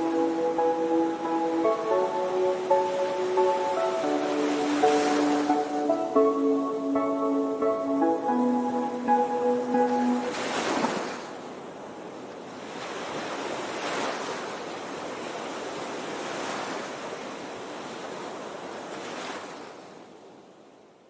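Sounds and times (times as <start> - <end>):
waves breaking on shore: 0.0 - 20.8.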